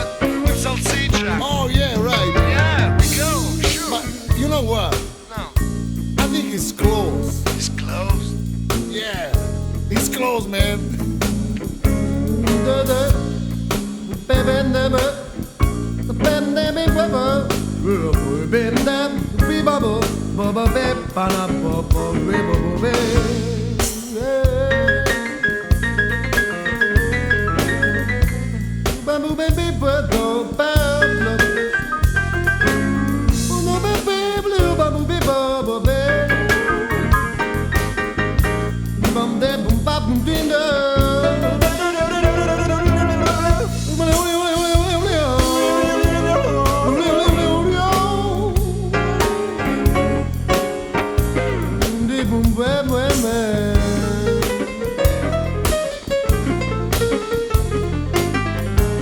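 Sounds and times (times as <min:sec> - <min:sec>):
blues song with singing: 0:00.0 - 0:59.0
drum kit: 0:00.0 - 0:59.0
steady bass notes: 0:00.0 - 0:59.0
bending sliding melody line: 0:41.2 - 0:44.4.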